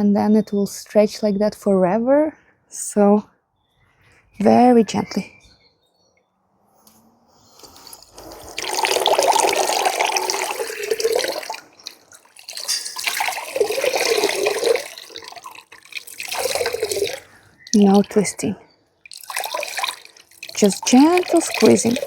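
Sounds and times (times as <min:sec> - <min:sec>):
water splashing into a basin: 0:08.2 - 0:18.4, 0:19.0 - 0:22.0.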